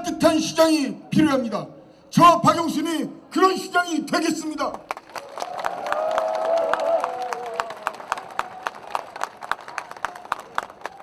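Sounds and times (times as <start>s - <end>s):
audience applauding: 4.9s - 11.0s.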